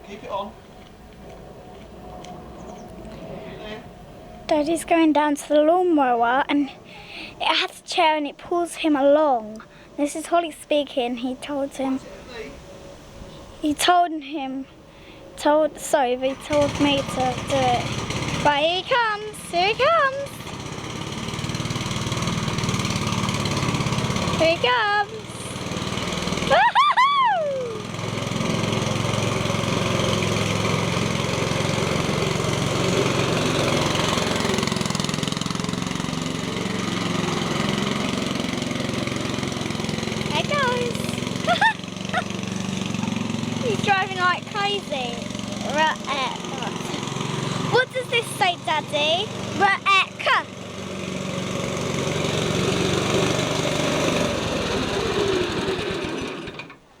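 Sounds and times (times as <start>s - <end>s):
lawn mower engine running: 15.9s - 57.0s.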